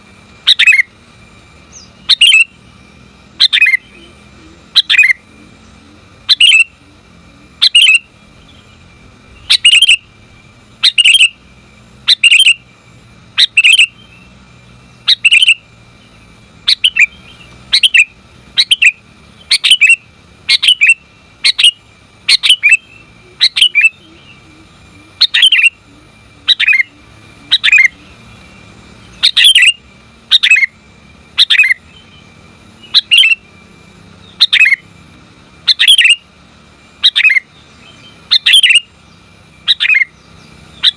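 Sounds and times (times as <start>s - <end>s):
bulbul short calls: 1.7s - 2.6s, 3.3s - 8.7s, 9.3s - 12.7s, 13.3s - 14.3s, 15.0s - 15.7s, 16.6s - 32.2s, 34.3s - 34.9s, 35.6s - 36.3s.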